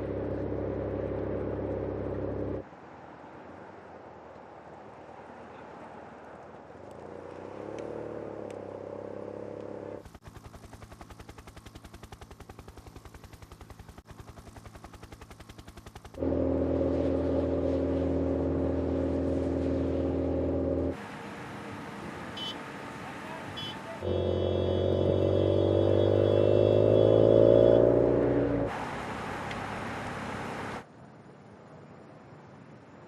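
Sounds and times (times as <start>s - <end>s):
loud engine drone: 0.0s - 2.6s, 14.0s - 30.8s.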